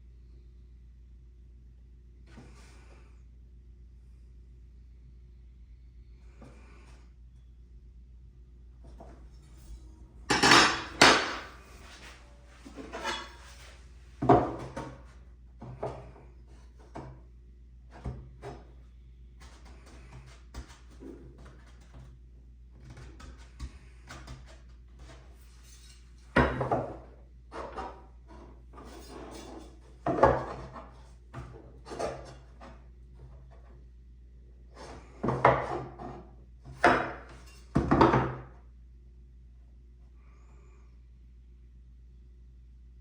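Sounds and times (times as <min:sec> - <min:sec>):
knocks of wood and metal: 0:10.3 - 0:11.6.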